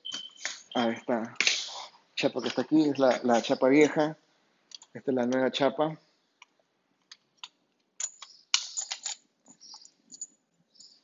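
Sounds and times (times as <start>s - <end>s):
metal lock parts clicking: 7.4s - 11.0s.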